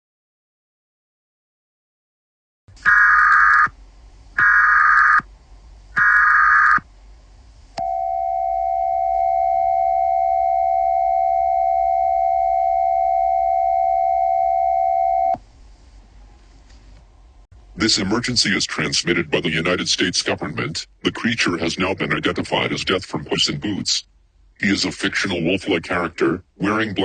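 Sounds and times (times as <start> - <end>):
loud data bursts: 2.8 - 3.8, 4.4 - 5.3, 6.0 - 6.8
two-tone attention signal: 7.8 - 15.4.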